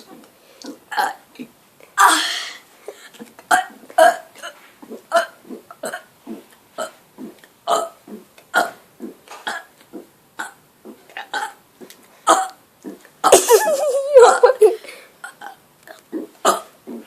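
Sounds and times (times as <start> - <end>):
person burping: 0.9 - 1.2, 6.8 - 9.7, 11.2 - 11.6, 12.3 - 17.0.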